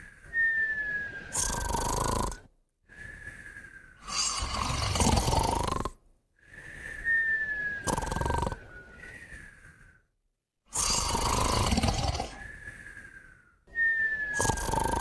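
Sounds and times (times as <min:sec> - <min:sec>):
whistling breath: 0:00.0 - 0:05.7, 0:06.4 - 0:15.0
pets snoring: 0:01.3 - 0:02.5, 0:04.0 - 0:06.0, 0:07.8 - 0:08.7, 0:10.7 - 0:12.5, 0:14.3 - 0:15.0.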